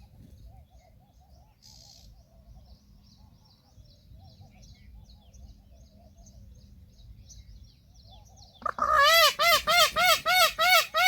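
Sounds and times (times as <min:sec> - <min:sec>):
small birds chirping: 0:00.0 - 0:09.1
peafowl honking calls: 0:08.6 - 0:11.0.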